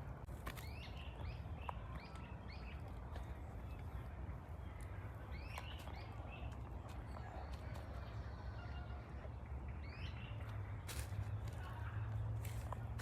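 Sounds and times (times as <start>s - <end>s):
low outdoor rumble: 0.0s - 13.0s
songbird chirping: 0.0s - 13.0s.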